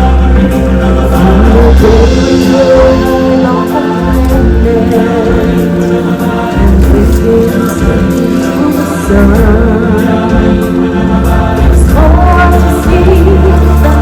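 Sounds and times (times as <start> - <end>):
band with heavy bass: 0.0 - 14.0
group of singers holding notes: 0.0 - 14.0.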